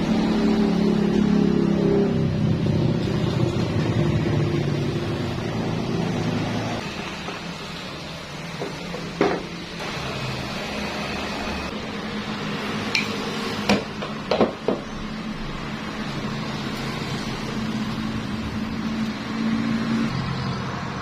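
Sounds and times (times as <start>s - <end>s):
welding machine humming: 2.6s - 13.6s.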